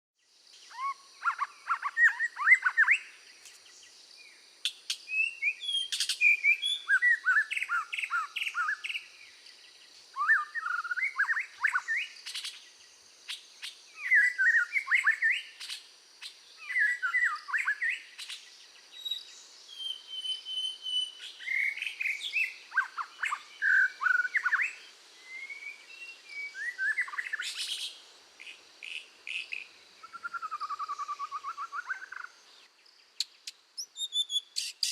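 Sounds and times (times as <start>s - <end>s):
bird chirping rapidly: 33.2s - 34.9s.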